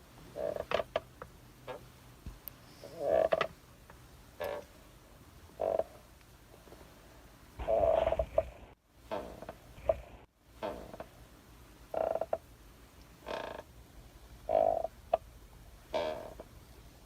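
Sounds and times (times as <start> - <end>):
rocking chair creaking: 9.1 - 10.0, 10.6 - 11.1, 13.2 - 13.6, 15.9 - 16.5.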